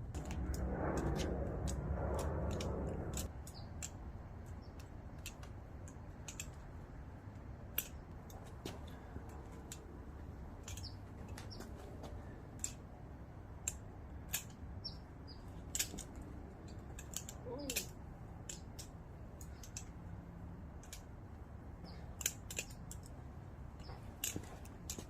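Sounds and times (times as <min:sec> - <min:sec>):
butterfly knife clicking and clacking: 0:02.2 - 0:06.6, 0:12.6 - 0:12.8, 0:13.6 - 0:14.6, 0:15.6 - 0:20.0, 0:20.8 - 0:21.1, 0:22.2 - 0:23.2.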